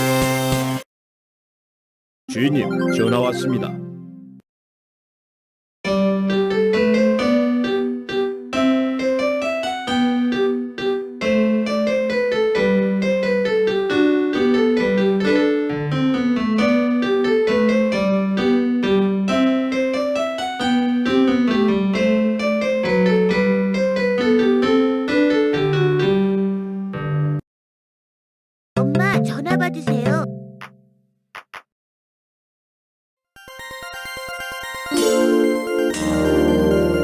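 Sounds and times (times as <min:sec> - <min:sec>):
piano ringtone melody: 0:02.3 - 0:04.4, 0:05.9 - 0:27.4, 0:33.4 - 0:37.0.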